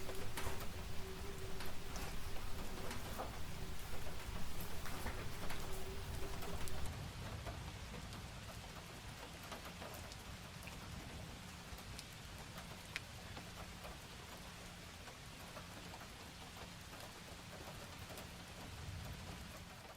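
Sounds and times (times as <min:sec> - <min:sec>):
wood fire crackling: 0:00.0 - 0:06.9
steady rain falling: 0:00.0 - 0:19.9.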